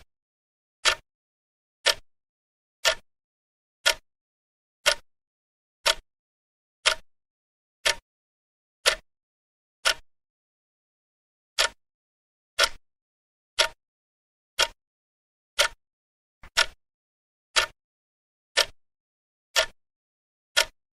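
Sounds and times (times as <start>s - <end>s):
clock ticking: 0.8s - 1.0s, 1.8s - 2.0s, 2.8s - 3.0s, 3.8s - 4.0s, 4.8s - 5.0s, 5.8s - 6.0s, 6.8s - 7.0s, 7.8s - 8.0s, 8.8s - 9.1s, 9.8s - 10.1s, 11.6s - 11.8s, 12.6s - 12.8s, 13.6s - 13.8s, 14.6s - 14.8s, 15.6s - 15.8s, 16.4s - 16.8s, 17.6s - 17.8s, 18.6s - 18.8s, 19.6s - 19.8s, 20.6s - 20.8s.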